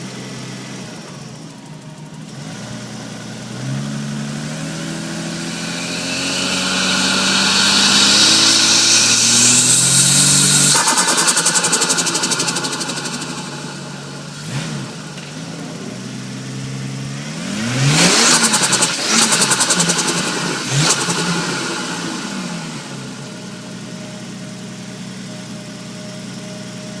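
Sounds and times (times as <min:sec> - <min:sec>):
car engine idling and revving: 0:00.0 - 0:27.0
turbo flutter chatter: 0:06.8 - 0:15.3.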